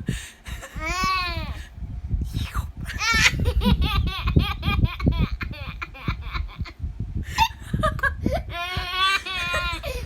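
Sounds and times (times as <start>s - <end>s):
baby laughing: 2.9s - 6.8s, 8.0s - 10.0s.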